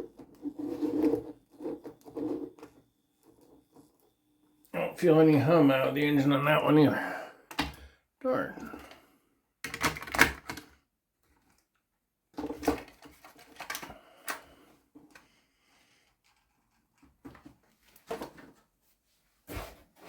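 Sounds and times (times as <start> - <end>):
hard plastic clicking and clattering: 9.6 - 10.8, 12.4 - 14.5.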